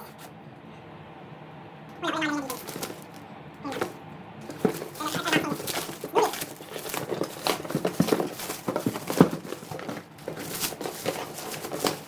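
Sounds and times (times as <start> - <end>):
packaging crinkling and rustling: 2.4 - 12.0.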